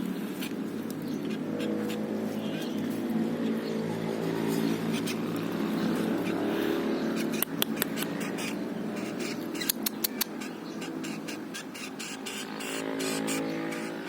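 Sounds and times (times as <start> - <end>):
beak clicks pecking: 7.2 - 10.5.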